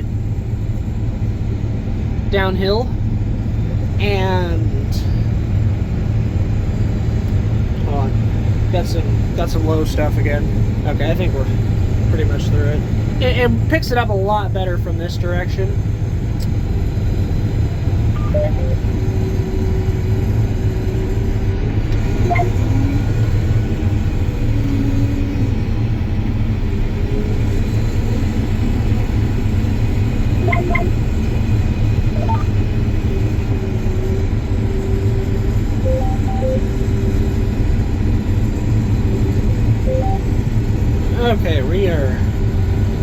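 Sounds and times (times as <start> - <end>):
combine harvester rumble: 0.0 - 43.0
faint electronic beeps: 18.2 - 19.0, 22.2 - 23.0, 30.4 - 31.0, 32.1 - 32.5, 35.8 - 36.8, 39.8 - 40.3.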